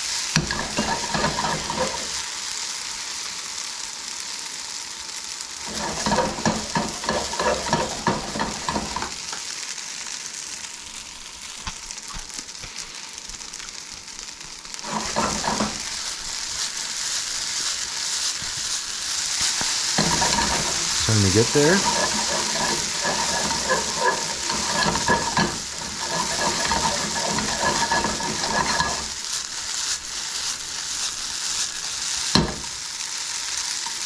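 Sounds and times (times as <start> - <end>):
noodles sizzling in a frying pan: 0.0 - 34.0
stirring and tossing clatter: 0.4 - 2.2, 5.6 - 9.2, 14.8 - 16.0, 19.5 - 29.4.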